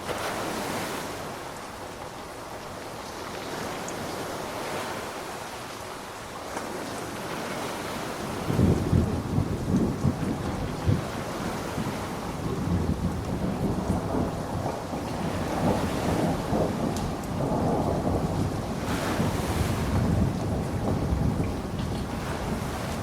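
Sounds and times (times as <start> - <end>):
steady rain: 0.0 - 23.0
crackle of thunder: 8.2 - 23.0
low rumble of thunder: 8.2 - 23.0.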